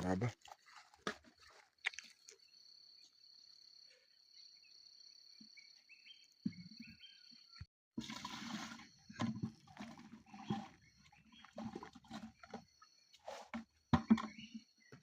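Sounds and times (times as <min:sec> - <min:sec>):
insect chirps: 0:00.0 - 0:07.7.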